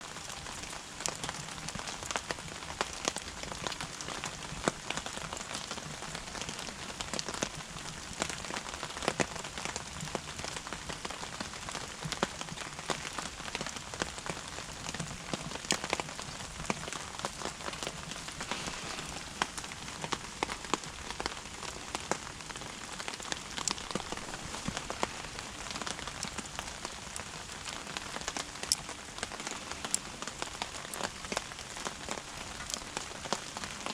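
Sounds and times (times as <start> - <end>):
wood fire crackling: 0.0 - 33.9
steady hiss: 12.9 - 33.9.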